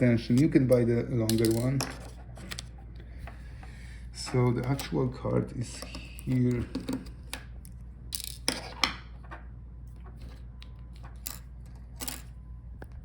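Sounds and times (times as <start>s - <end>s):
small parts clicking and scraping: 10.0s - 12.4s.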